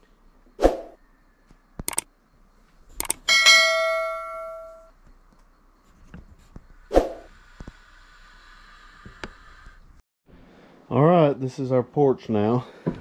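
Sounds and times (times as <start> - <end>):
bell-like metallic ring: 3.3 - 4.9.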